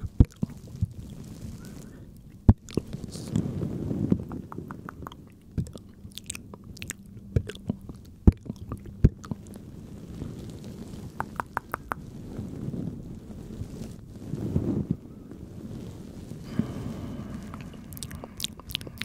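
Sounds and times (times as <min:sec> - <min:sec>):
soft breathy hiss: 0:00.0 - 0:19.0
wet mouth clicks and smacks: 0:04.4 - 0:09.4, 0:11.2 - 0:12.0, 0:18.0 - 0:19.0.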